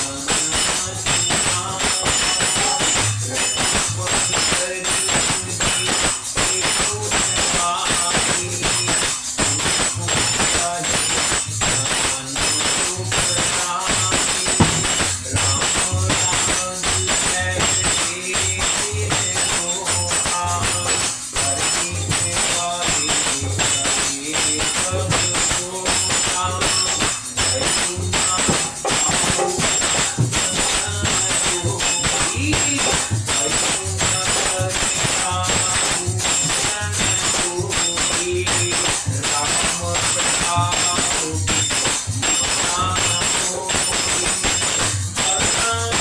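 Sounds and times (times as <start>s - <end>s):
jingling percussion: 0.0s - 46.0s
steady drum beat: 12.2s - 38.0s.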